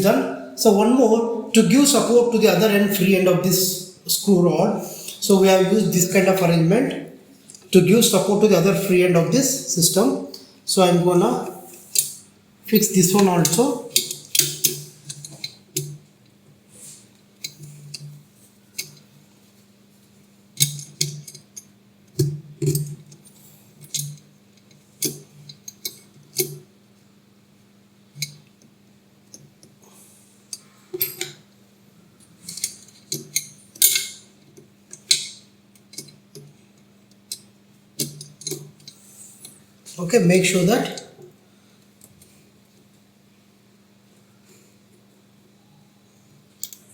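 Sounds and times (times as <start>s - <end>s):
faint steady hum: 0.0s - 46.9s
metal tools clinking and scraping: 11.5s - 15.9s, 32.4s - 34.2s.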